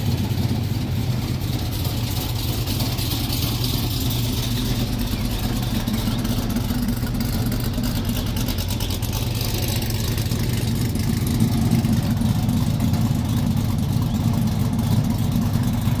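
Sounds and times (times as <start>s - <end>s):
engine idling: 0.0s - 16.0s.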